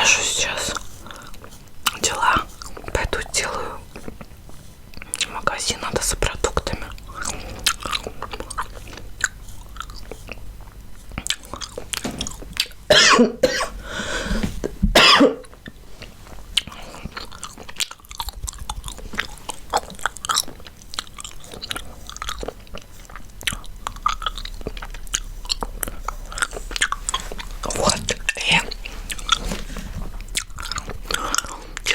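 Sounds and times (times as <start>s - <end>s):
gum chewing wet smacks: 6.0s - 12.9s, 15.5s - 29.4s, 30.0s - 31.9s.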